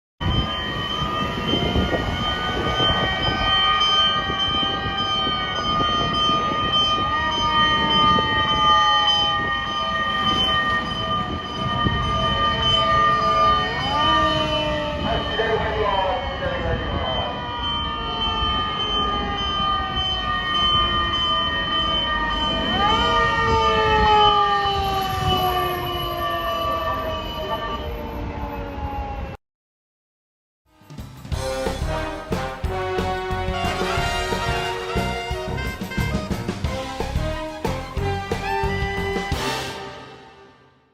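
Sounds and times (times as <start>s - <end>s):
low rumble of engines and road: 0.2s - 29.4s
motor sirens wailing: 0.2s - 29.4s, 31.3s - 40.7s.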